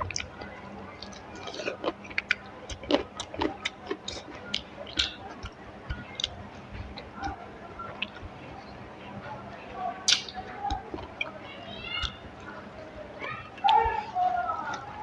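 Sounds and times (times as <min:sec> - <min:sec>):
wet chewing smacks: 0:00.0 - 0:08.3, 0:10.0 - 0:11.4.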